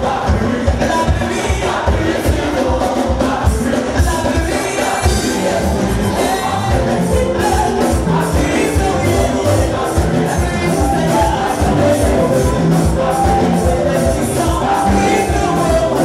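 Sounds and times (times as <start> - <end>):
choir singing: 0.0 - 16.0
steady drum beat: 0.0 - 16.0.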